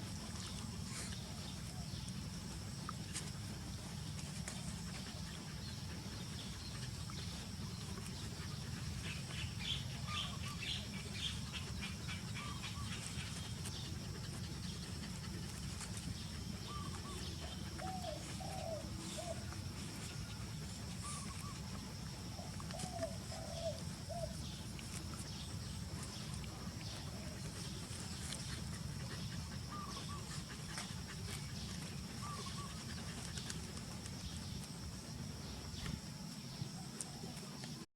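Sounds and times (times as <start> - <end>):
steady low hum: 0.0 - 37.9.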